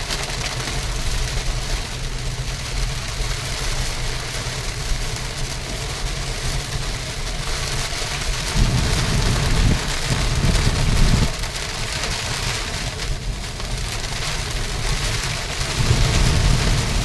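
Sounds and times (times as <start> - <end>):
steady rain falling: 0.0 - 17.0
low rumble: 8.2 - 11.6, 15.0 - 17.0.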